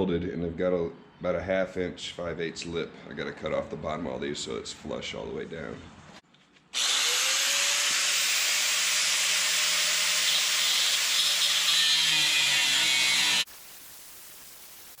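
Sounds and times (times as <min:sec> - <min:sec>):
power tool cutting steel: 0:06.8 - 0:13.5.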